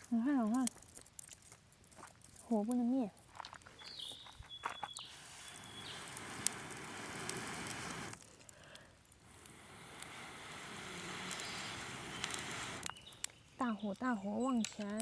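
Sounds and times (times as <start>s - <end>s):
campfire crackling and popping: 0.0s - 15.0s
fire rushing noise: 5.0s - 13.0s.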